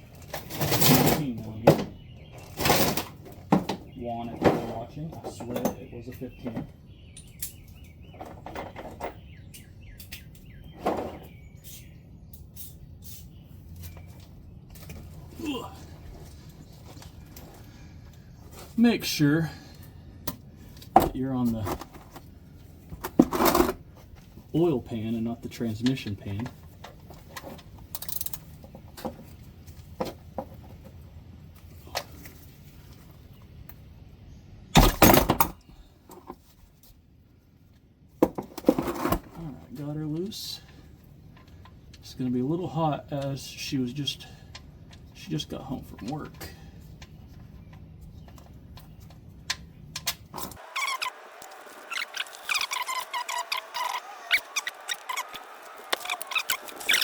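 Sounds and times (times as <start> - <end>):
small birds chirping: 1.2 - 21.6, 39.4 - 50.0, 50.6 - 57.0.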